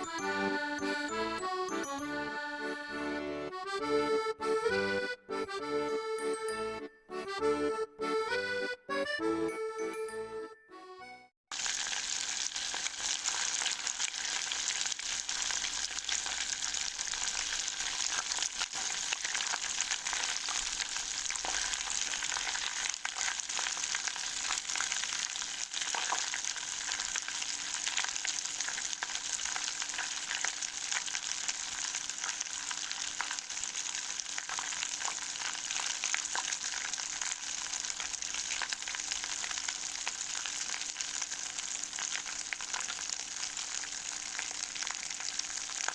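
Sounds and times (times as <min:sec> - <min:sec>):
butter sizzling in saucepan: 0:11.5 - 0:45.9.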